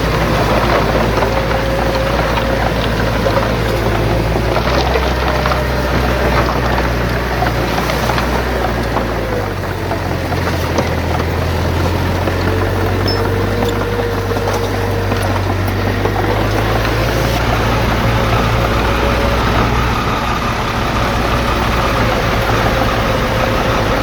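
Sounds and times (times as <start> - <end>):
bulldozer diesel engine running: 0.0 - 24.0
small metal clanks: 0.4 - 17.4.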